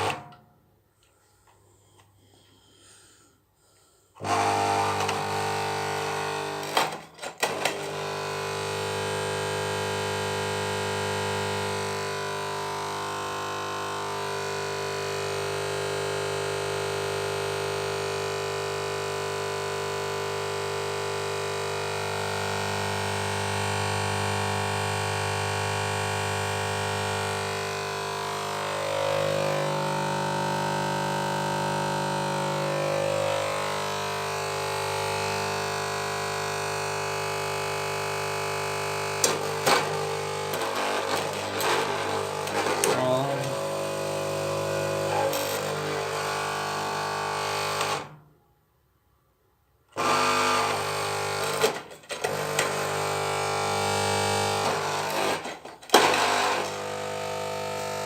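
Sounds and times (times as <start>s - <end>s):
fluorescent ballast buzzing: 22.3s - 48.0s, 50.0s - 58.0s.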